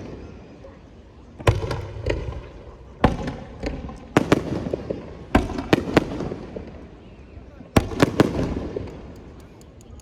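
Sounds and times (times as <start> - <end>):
fireworks bangs: 1.4 - 6.9, 7.8 - 9.2.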